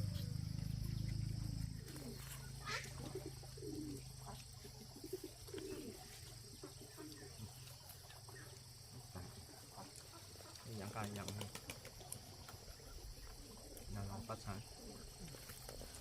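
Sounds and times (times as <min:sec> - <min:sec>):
short low bird calls: 0:00.0 - 0:07.8
low steady hum: 0:00.0 - 0:10.3
high insect drone: 0:00.0 - 0:16.0.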